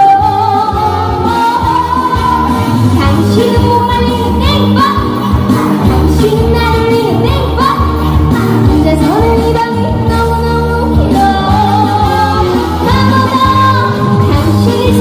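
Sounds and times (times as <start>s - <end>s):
backing music with bass beat: 0.0s - 15.0s
woman singing with vibrato: 0.0s - 15.0s.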